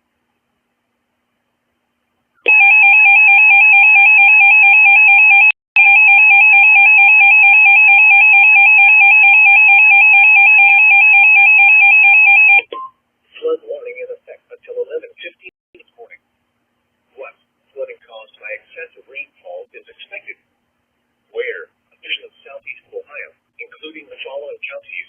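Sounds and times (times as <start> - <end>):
harsh two-tone alarm: 2.5 - 12.6.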